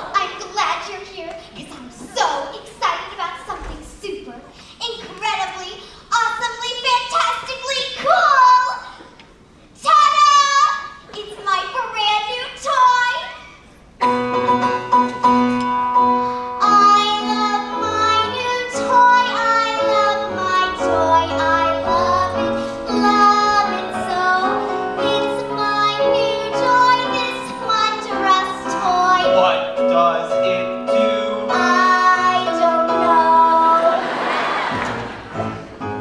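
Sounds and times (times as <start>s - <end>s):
piano accompaniment: 14.0s - 36.0s
young voices singing: 16.6s - 34.7s.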